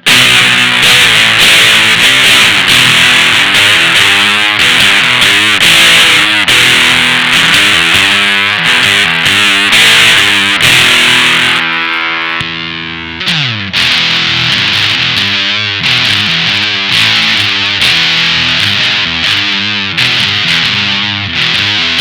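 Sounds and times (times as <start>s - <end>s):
fuzz electric guitar riffing: 0.0s - 22.0s.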